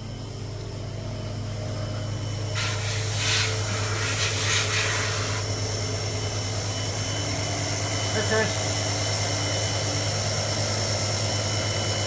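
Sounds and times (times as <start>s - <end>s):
shop machinery humming: 0.0s - 12.0s
spray hissing: 2.6s - 5.4s.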